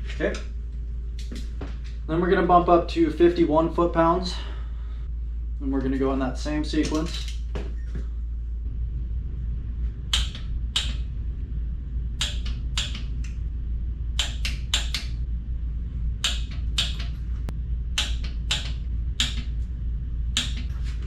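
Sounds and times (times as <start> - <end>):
steady low hum: 0.0 - 21.0
torque wrench clicking: 14.2 - 15.2, 16.2 - 17.2, 18.0 - 19.6.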